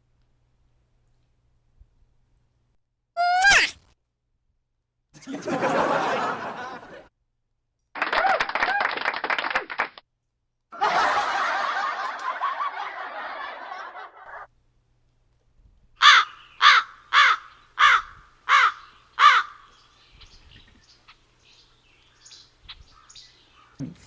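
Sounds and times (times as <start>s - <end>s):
crow caws: 16.0s - 19.8s.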